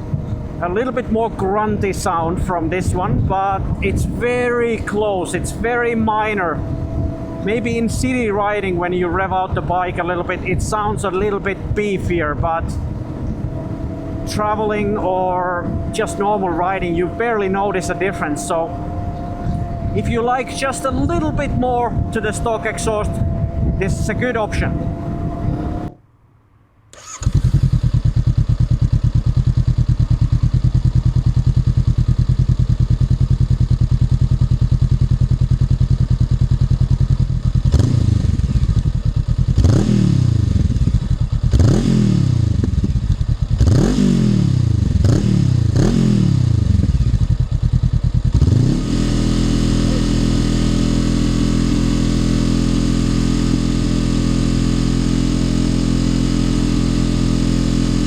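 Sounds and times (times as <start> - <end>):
motorcycle engine revving: 0.0 - 26.0, 26.9 - 58.0.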